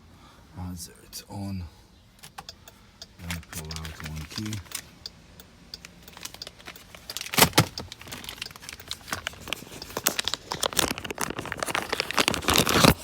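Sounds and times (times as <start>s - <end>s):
keys clinking: 3.1s - 5.1s, 5.8s - 11.0s.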